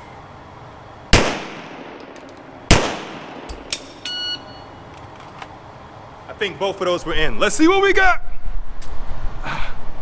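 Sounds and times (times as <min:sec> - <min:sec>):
pistol shot echoing indoors: 0:01.1 - 0:02.0, 0:02.7 - 0:03.6
short electronic beep: 0:04.1 - 0:04.8.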